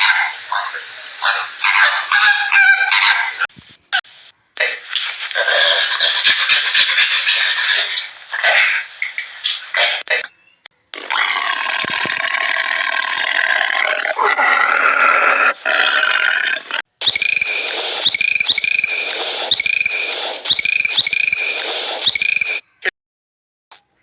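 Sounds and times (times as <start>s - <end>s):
long harsh animal call: 0.0s - 3.5s
short high bird-like calls: 17.0s - 22.9s.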